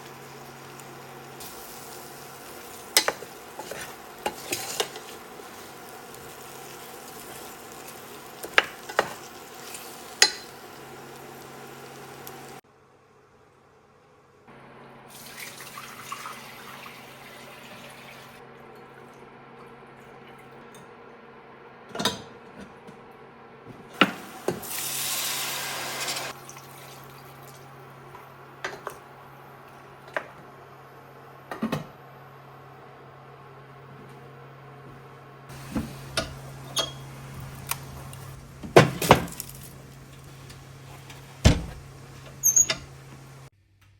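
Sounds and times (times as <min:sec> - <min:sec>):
kitchen tap running: 0:15.1 - 0:18.4, 0:24.0 - 0:27.7, 0:35.5 - 0:43.5
dishes clinking: 0:35.6 - 0:43.4.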